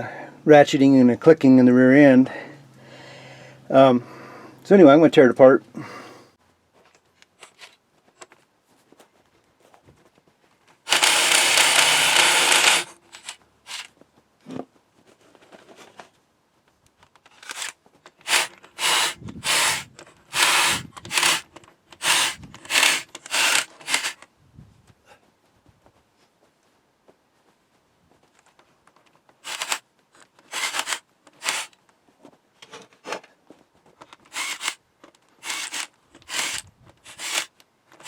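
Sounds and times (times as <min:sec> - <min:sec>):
power tool running in bursts: 0:10.9 - 0:13.9, 0:18.2 - 0:21.4, 0:22.0 - 0:24.2, 0:29.4 - 0:29.8, 0:30.5 - 0:31.7, 0:34.3 - 0:34.8, 0:35.4 - 0:37.5.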